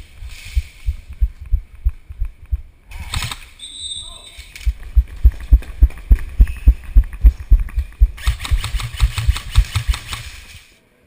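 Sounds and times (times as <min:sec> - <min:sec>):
low thumps: 0:00.1 - 0:02.8, 0:04.7 - 0:08.3.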